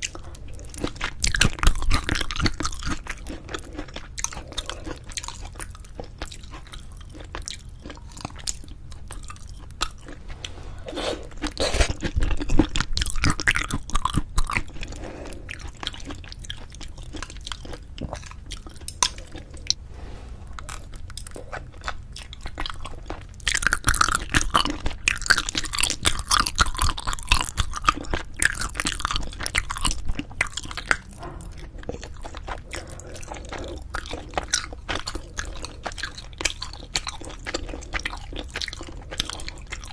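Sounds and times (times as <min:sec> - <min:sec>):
close chewing and biting: 0:00.0 - 0:19.8, 0:20.5 - 0:39.9.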